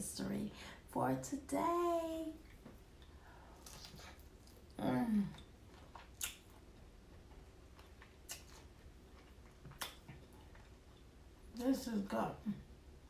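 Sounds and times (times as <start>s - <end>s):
low steady hum: 0.0s - 13.0s
person chewing: 2.4s - 11.1s.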